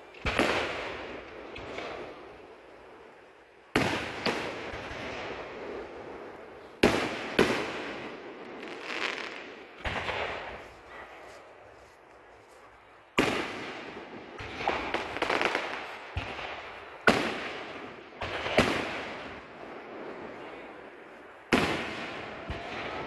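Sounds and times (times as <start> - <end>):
fireworks bangs: 0.0 - 11.6, 13.1 - 23.0
small firework pops: 0.1 - 2.3, 8.6 - 19.4.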